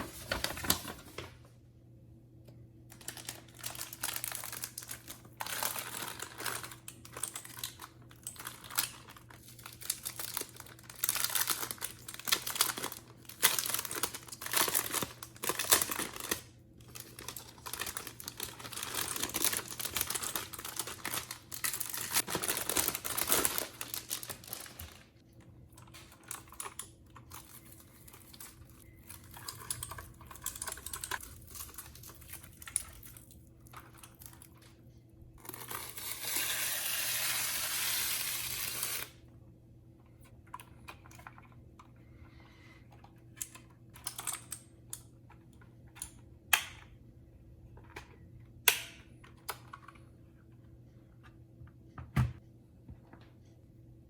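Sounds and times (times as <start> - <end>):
plastic packaging crinkling: 0.0 - 1.3, 2.9 - 25.2, 25.8 - 34.7, 35.4 - 39.1
rasping plastic rustle: 2.9 - 25.2.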